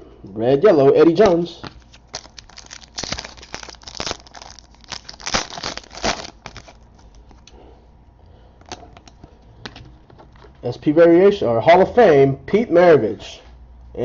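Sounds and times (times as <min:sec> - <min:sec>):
wrappers crinkling: 0:01.7 - 0:07.5.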